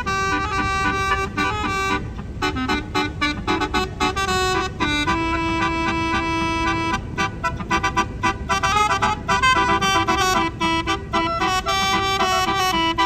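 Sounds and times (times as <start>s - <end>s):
bus horn playing a tune: 0.0s - 13.0s
steady low rumble: 0.0s - 13.0s.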